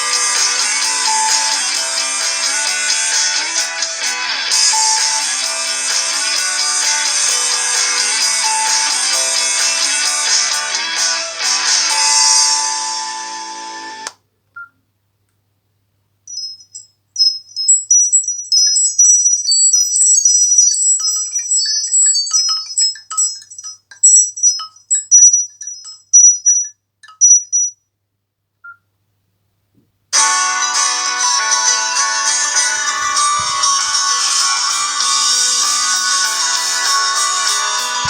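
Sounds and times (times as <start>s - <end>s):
guitar tone: 0.0s - 14.1s, 30.2s - 38.0s
high tinkling phone ringtone: 0.0s - 14.1s, 16.3s - 27.8s, 30.2s - 38.0s.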